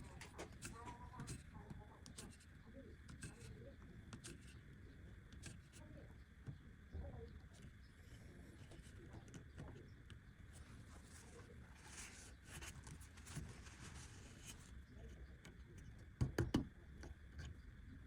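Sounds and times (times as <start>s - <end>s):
scratching and handling on wood: 7.5s - 15.6s.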